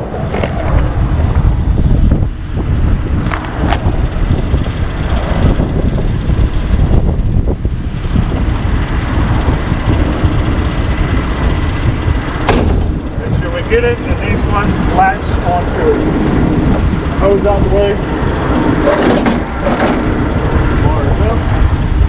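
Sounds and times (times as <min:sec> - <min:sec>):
diesel truck engine running: 0:00.0 - 0:22.0
sharp knocks: 0:12.4 - 0:13.2, 0:18.8 - 0:20.2.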